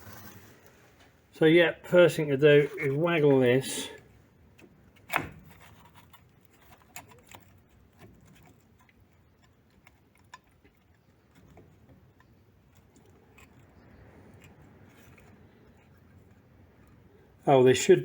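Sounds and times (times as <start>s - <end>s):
faint clicks and metallic taps: 4.6s - 17.0s.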